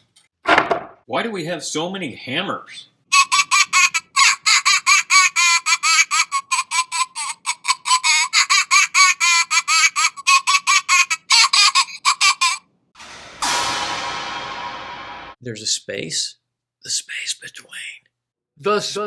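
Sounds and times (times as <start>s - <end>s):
high-pitched squeaky laughter: 3.2s - 12.6s.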